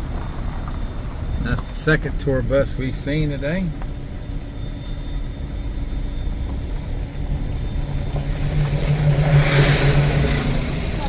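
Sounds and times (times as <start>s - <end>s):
car engine and road noise: 0.0s - 11.0s
rush of noise: 4.6s - 11.0s.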